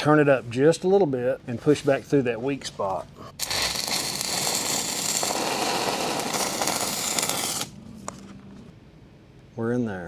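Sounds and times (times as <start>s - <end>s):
welding arc burning: 3.4s - 7.8s.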